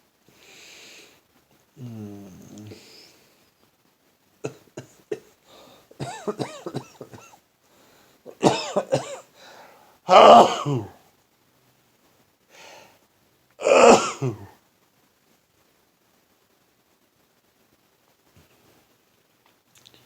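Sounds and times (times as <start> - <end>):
man sneezing: 10.1 - 11.0, 13.6 - 14.5.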